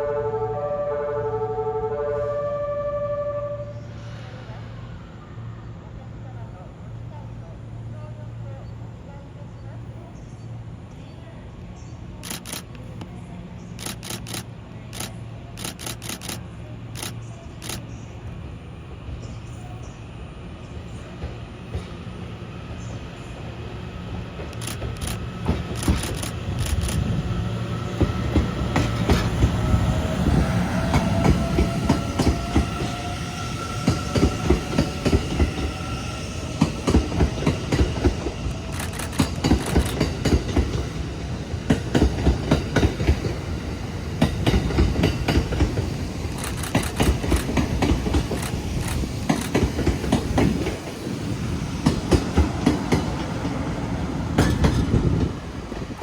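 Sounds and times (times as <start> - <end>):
train wheels clattering over joints: 24.4 - 27.0, 36.6 - 40.9, 44.2 - 50.9.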